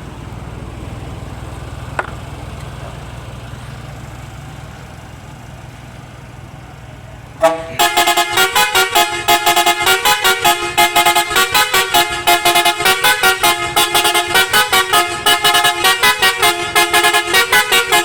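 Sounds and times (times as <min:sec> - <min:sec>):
vehicle engine idling: 0:00.0 - 0:18.0
musical air horn playing a tune: 0:07.4 - 0:18.0.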